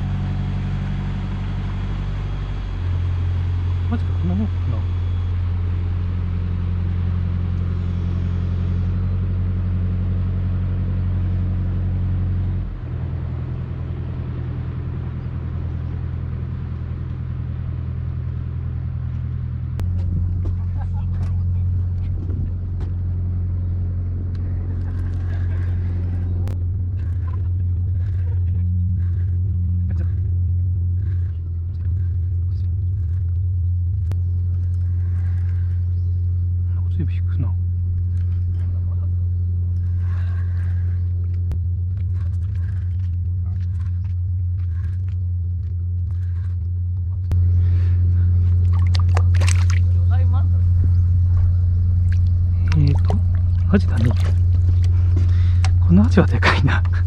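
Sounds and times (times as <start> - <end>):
engine humming: 0.0 - 57.0.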